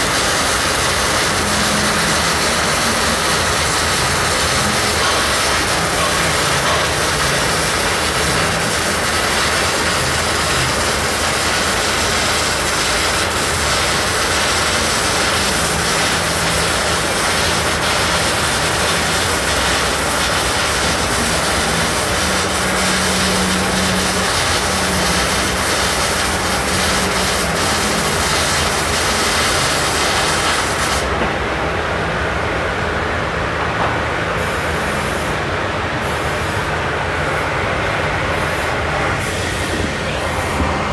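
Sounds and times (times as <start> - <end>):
welding arc crackling: 0.0 - 31.2.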